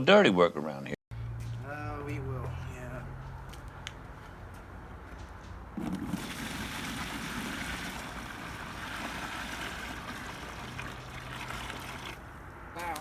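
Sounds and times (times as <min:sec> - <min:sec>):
water running into a tub: 0:05.8 - 0:12.3.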